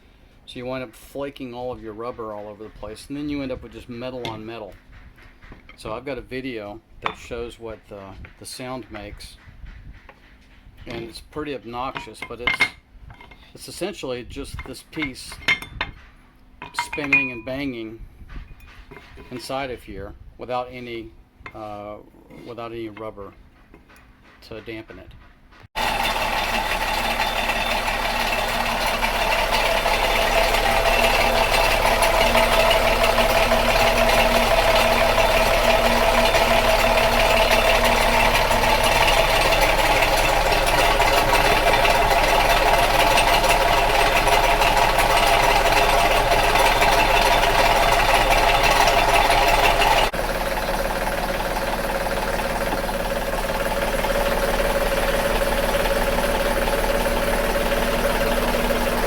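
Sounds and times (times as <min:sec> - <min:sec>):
metallic rattling and banging: 0:14.3 - 0:19.6, 0:25.7 - 0:59.0
boat engine running: 0:25.8 - 0:59.0.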